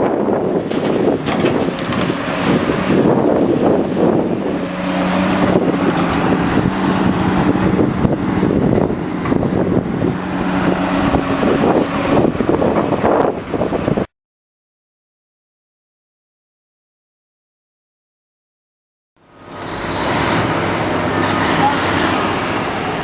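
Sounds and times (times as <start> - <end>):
heavy vehicle engine hum: 0.0 - 14.1, 19.2 - 23.0
highway traffic rushing: 0.0 - 14.1, 19.2 - 23.0.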